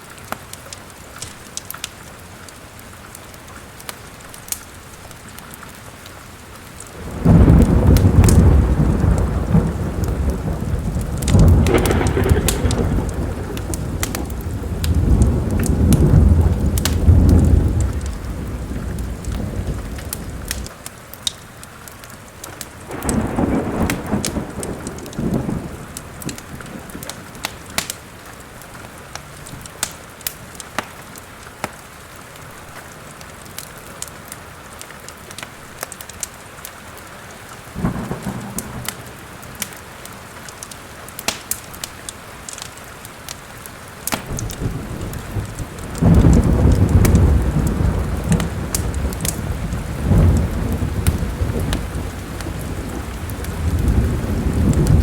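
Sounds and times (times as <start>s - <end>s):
steady rain: 0.0s - 55.0s
wood fire crackling: 0.0s - 55.0s
thunder rumbling: 7.0s - 20.7s, 22.8s - 27.9s, 37.7s - 39.8s, 44.1s - 55.0s.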